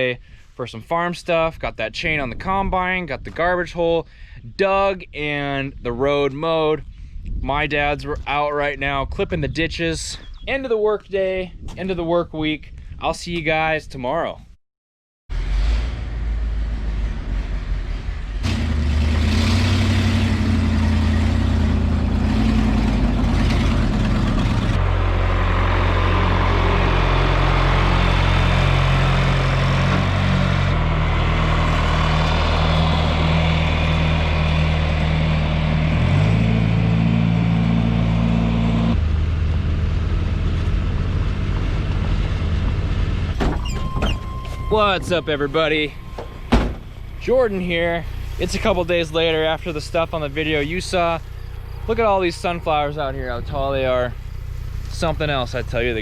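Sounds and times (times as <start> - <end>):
vehicle engine running: 16.4 - 56.0.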